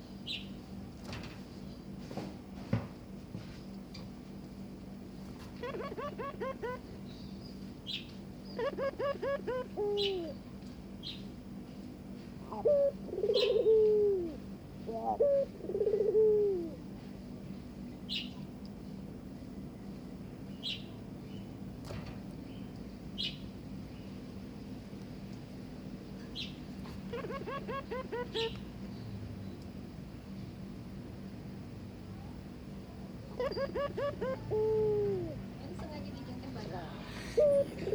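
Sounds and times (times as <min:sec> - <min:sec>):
steady low hum: 0:00.0 - 0:37.9
dove cooing: 0:05.4 - 0:07.0, 0:08.6 - 0:10.4, 0:12.4 - 0:16.8, 0:26.9 - 0:28.6, 0:33.2 - 0:35.5, 0:37.1 - 0:37.9.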